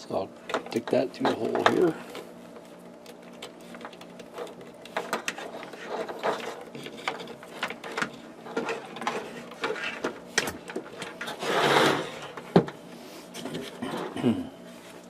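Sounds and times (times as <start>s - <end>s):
wiring handling clicks and rustles: 0.0s - 11.4s
faint steady hum: 0.0s - 15.0s
scraping rustle: 1.2s - 12.4s.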